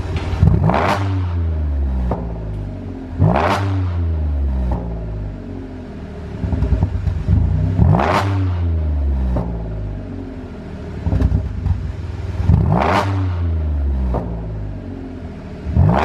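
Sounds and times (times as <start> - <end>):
exhaust pops and crackles: 0.0 - 1.3, 2.0 - 3.6, 6.4 - 8.4, 11.0 - 13.1, 14.0 - 14.5
car engine revving: 0.0 - 16.0.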